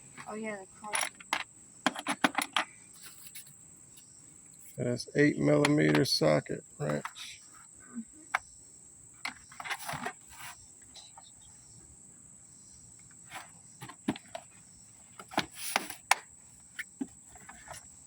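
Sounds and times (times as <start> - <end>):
crickets chirring: 0.0 - 18.0
light handling clicks and knocks: 0.2 - 4.1, 5.6 - 7.3.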